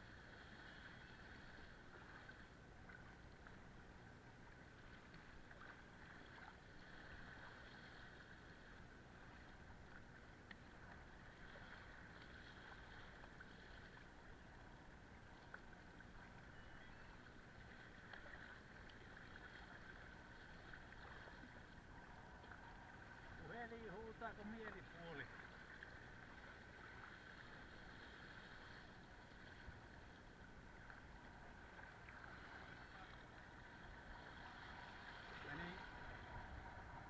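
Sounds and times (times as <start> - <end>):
water noise of moving boat: 0.0 - 37.0
light ticks: 10.4 - 10.6.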